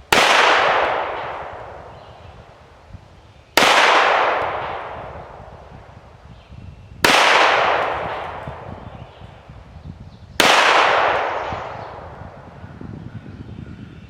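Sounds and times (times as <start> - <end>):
handgun shots with echo: 0.1 - 2.3, 3.6 - 5.4, 7.0 - 9.3, 10.4 - 12.4.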